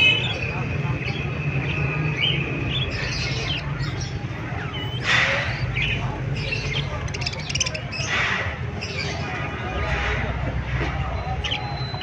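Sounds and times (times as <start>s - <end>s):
parrots chirping: 1.6s - 8.2s.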